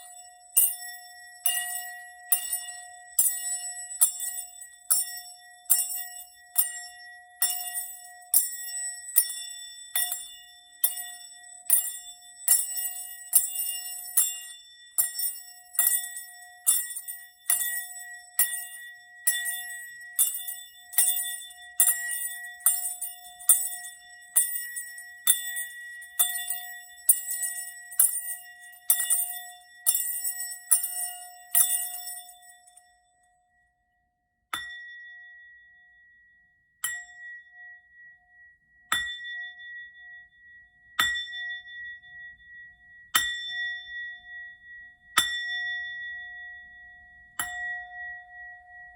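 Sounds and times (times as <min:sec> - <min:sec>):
small metal bell ringing: 0:00.0 - 0:33.3.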